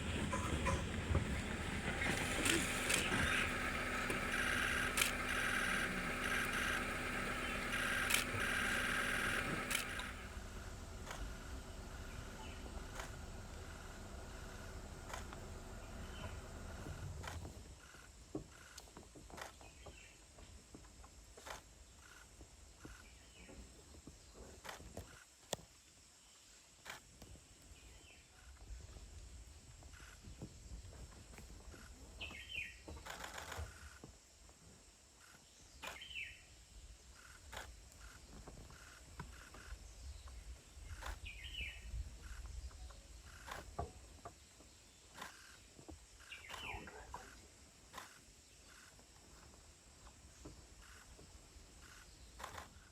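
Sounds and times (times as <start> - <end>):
faint clicks: 0.3 - 10.2.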